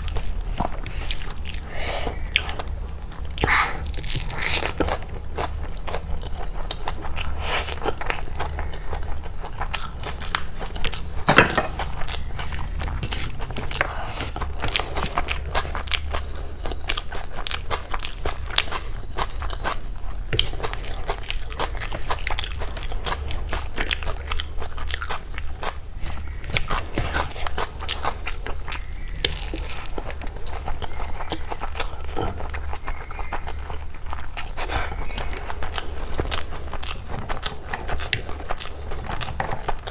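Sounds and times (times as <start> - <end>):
chewing and biting: 11.7 - 39.9.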